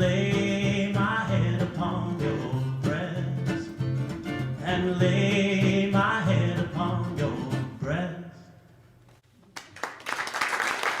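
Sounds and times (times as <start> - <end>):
acoustic guitar: 0.0 - 8.4
man singing: 0.0 - 8.6.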